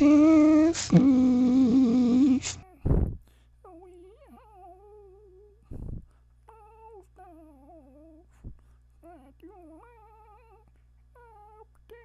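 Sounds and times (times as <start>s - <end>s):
pet whimpering: 0.0s - 3.1s, 9.1s - 11.6s.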